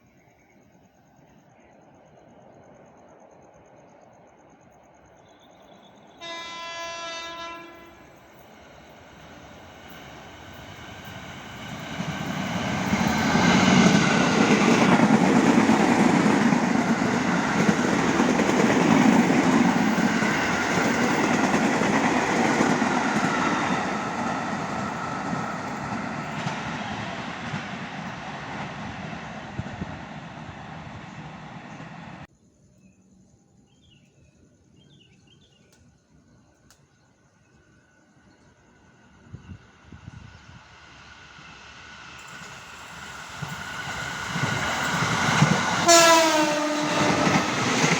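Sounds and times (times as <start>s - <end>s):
train passing by: 0.0s - 32.3s, 37.3s - 47.9s
train horn blast: 6.2s - 8.2s, 45.8s - 47.6s.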